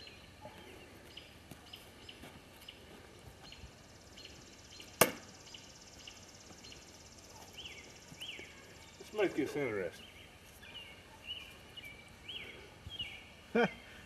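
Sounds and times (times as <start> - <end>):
tomahawk striking target thunk: 5.0 - 5.3.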